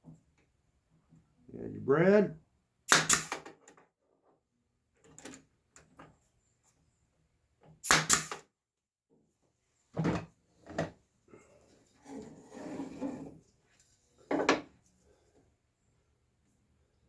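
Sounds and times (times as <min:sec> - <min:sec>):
brad nailer firing: 0:02.9 - 0:03.5, 0:07.8 - 0:08.4.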